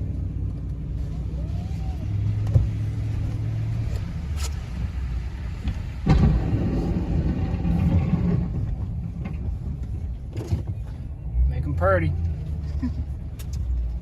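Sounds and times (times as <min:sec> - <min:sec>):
sudden thump: 0:06.0 - 0:08.8.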